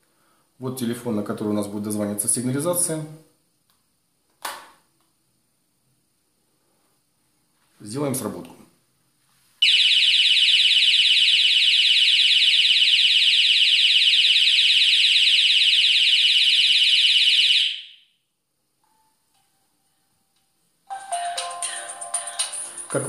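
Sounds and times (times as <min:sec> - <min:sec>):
warbling alarm siren: 0:09.6 - 0:18.1.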